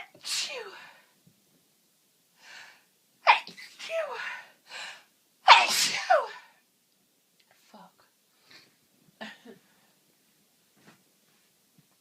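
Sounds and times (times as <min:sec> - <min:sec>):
woman sneezing: 0:05.5 - 0:06.5.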